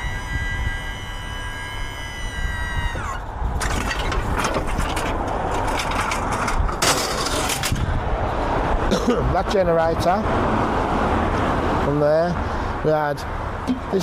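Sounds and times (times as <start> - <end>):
high-pitched motor whine: 0.0 - 3.3
metallic clattering of scrap: 3.6 - 7.9.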